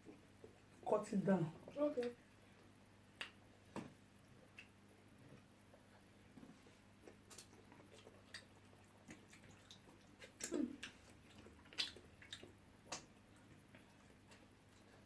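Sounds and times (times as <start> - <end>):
wet mouth smacks eating: 7.0 - 13.1.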